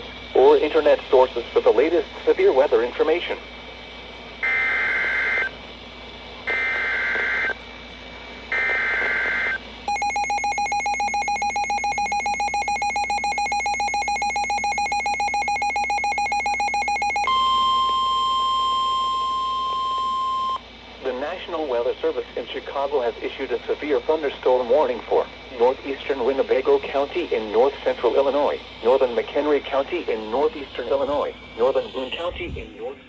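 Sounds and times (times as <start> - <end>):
steady attention tone: 6.5 - 7.6, 8.5 - 20.6, 27.8 - 33.0
fast-pulsing electronic alert beep: 8.6 - 17.9.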